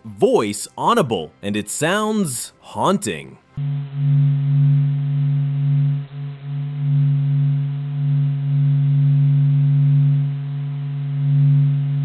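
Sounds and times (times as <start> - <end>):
low haunting hum: 3.5 - 12.0.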